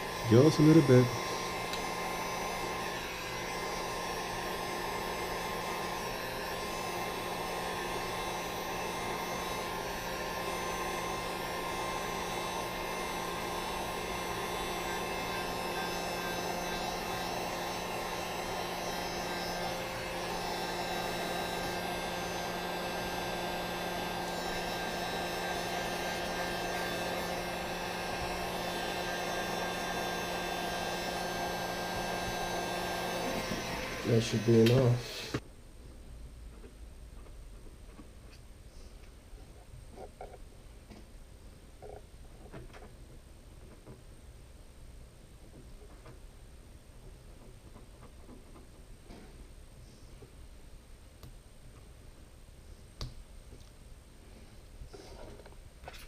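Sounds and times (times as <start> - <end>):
hot-air blower humming: 0.0 - 35.4.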